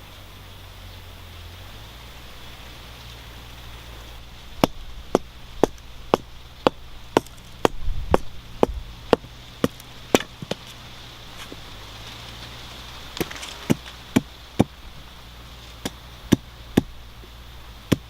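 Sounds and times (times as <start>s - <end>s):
blade chopping: 4.5s - 10.8s, 13.1s - 14.8s, 15.7s - 17.0s.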